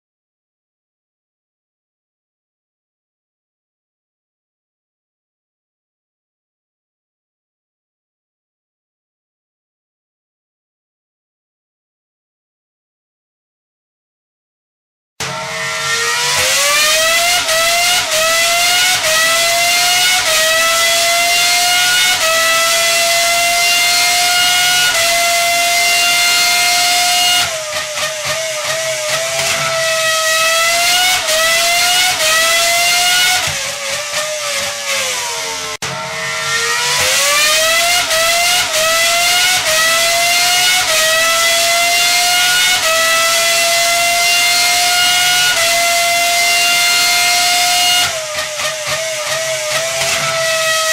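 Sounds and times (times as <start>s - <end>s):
car engine accelerating: 15.2s - 50.9s.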